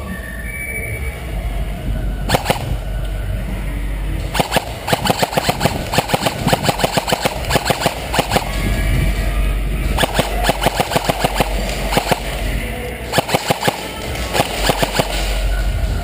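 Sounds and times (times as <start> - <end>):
airsoft guns firing: 2.3 - 2.8, 4.3 - 8.6, 10.0 - 15.6.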